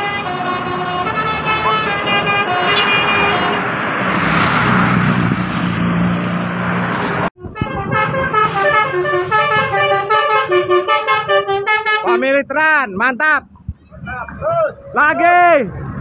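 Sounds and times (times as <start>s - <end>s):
multi-tone bus horn melody: 0.0s - 3.7s, 7.4s - 12.3s
rush of passing bus: 0.0s - 10.1s, 15.6s - 16.0s.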